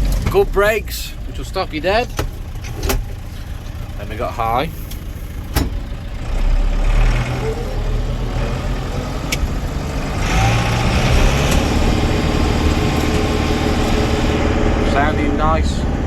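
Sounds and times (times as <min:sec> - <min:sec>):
tractor diesel engine running: 0:00.0 - 0:16.0.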